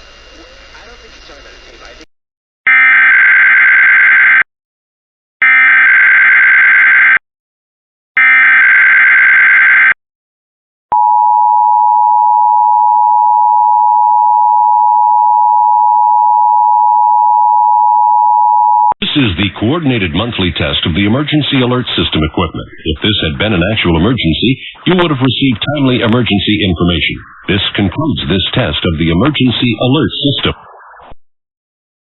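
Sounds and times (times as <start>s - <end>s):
screeching digital data bursts: 24.9s - 28.2s.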